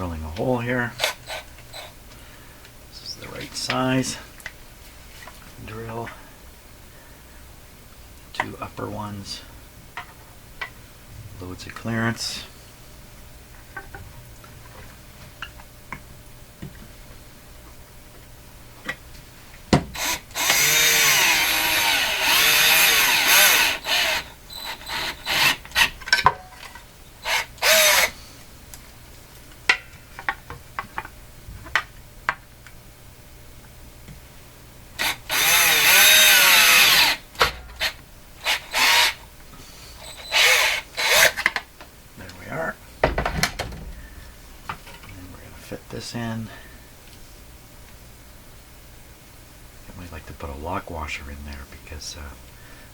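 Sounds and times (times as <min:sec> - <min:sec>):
electric drill whining: 0:19.9 - 0:26.0, 0:27.2 - 0:28.2, 0:35.0 - 0:39.2, 0:40.0 - 0:41.5.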